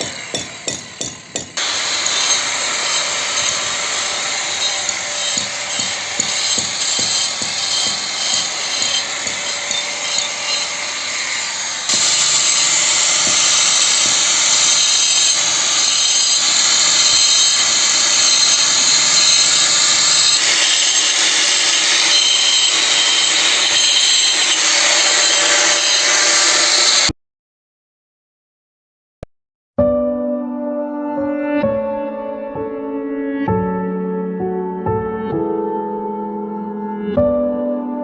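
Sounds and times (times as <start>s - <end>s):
scraping and knocking: 0.0s - 27.1s
power tool cutting wall: 0.0s - 27.2s.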